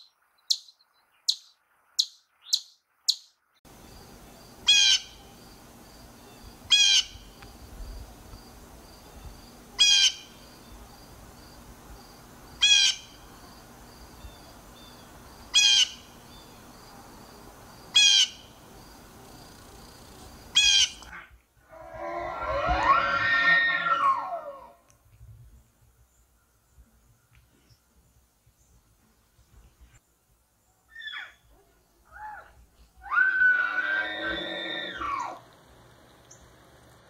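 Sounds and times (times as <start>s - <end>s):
bird harsh call: 4.6s - 5.3s, 6.7s - 7.3s, 9.8s - 10.4s, 20.6s - 21.1s.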